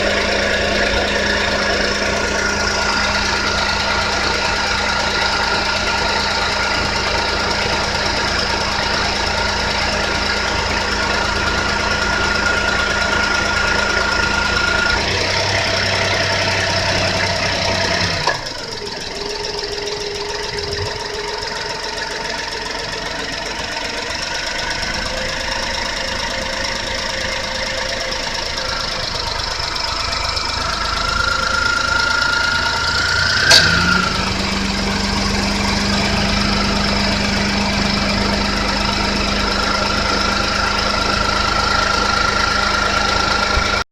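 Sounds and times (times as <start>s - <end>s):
high whine: 0.0s - 21.4s, 25.4s - 43.8s
car engine idling: 0.0s - 43.9s
low hum: 25.4s - 43.8s.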